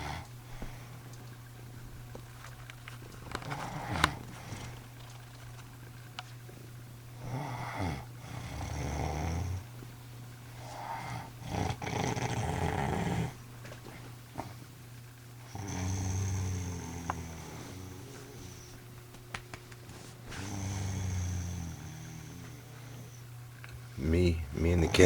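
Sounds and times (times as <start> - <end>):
woman snoring: 7.2 - 9.6, 10.6 - 13.4, 15.5 - 18.7, 20.3 - 23.2.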